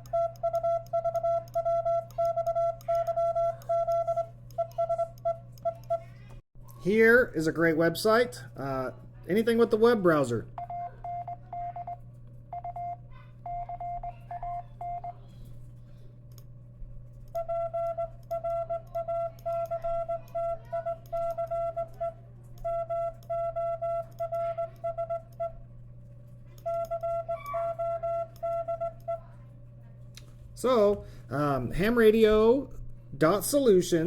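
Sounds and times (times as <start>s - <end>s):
morse code beeps: 0.0s - 6.1s, 10.6s - 15.3s, 17.3s - 25.6s, 26.6s - 29.3s
steady low hum: 0.0s - 34.0s.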